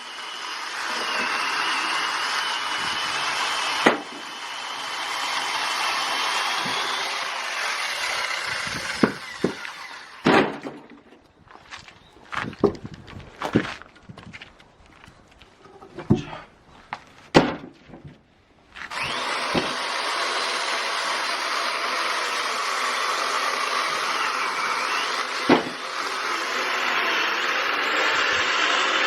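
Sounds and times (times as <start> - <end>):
sharp wooden knocks: 3.8 - 4.3, 8.5 - 11.2, 17.3 - 18.2, 19.1 - 19.8, 25.4 - 25.9
loud steady machine noise: 18.9 - 29.0.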